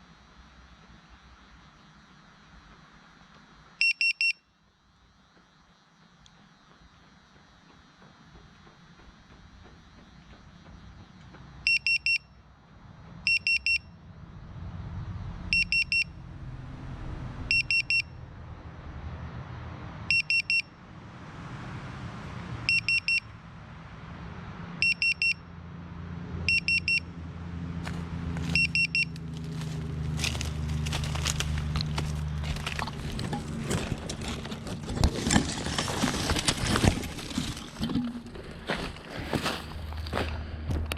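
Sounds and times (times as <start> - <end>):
short high buzzer beeps: 15.5 - 16.1, 28.5 - 29.2
sharp rustling clicks: 28.4 - 37.8.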